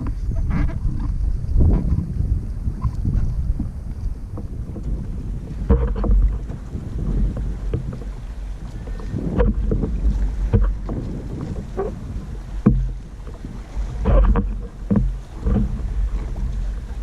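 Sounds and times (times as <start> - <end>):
water splashes: 0.0 - 17.0
wind buffeting microphone: 0.0 - 17.0
short knocks: 5.6 - 6.5, 8.8 - 11.9, 12.6 - 17.0.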